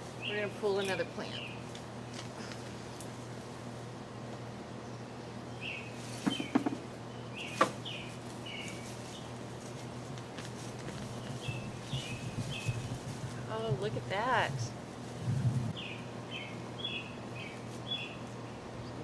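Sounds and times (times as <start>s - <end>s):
crackles of plant pulled from soil: 0.0s - 4.6s, 7.4s - 15.9s
small bird chirping: 11.0s - 13.4s.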